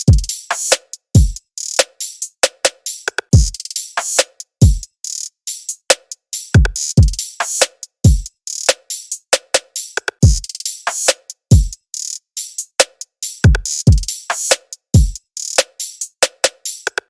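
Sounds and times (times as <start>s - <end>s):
hi-hat ticks: 0.0s - 17.0s
deep kick drums: 4.6s - 4.8s, 8.1s - 8.3s, 11.5s - 11.7s, 15.0s - 15.2s.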